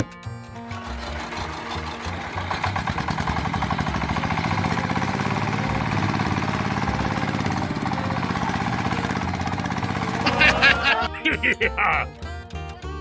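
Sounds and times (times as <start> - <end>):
small motor chattering: 0.7 - 11.1.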